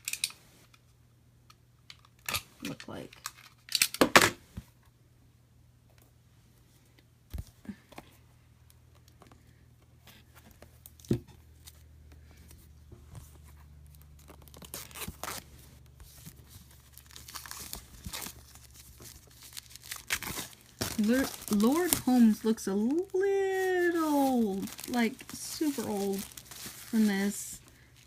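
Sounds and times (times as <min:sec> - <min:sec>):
plastic shrink-wrap crinkling: 0:13.8 - 0:28.0.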